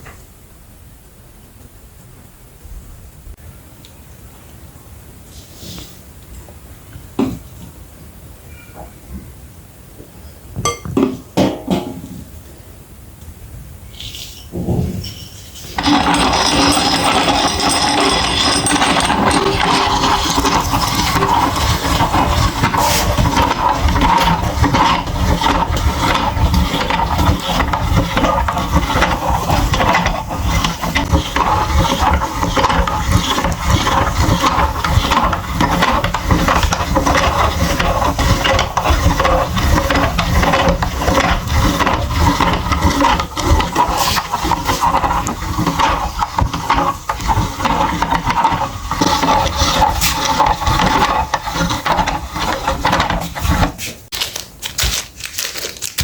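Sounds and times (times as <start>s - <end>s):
meat grinder crunching: 15.8s - 56.0s.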